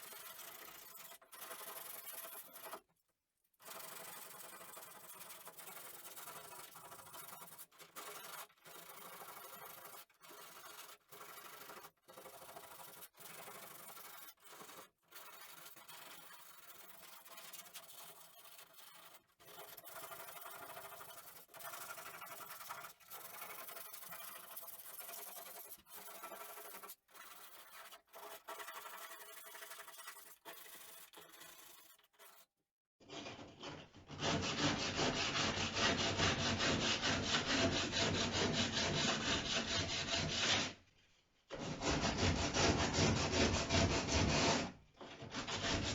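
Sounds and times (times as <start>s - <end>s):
sandpaper rasping: 34.2s - 40.8s, 41.6s - 44.7s, 45.3s - 45.9s.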